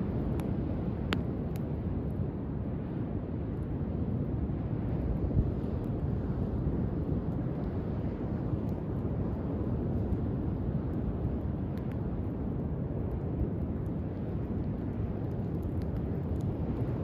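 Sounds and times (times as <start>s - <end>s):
campfire crackling: 0.0s - 17.0s
wind: 0.0s - 17.0s.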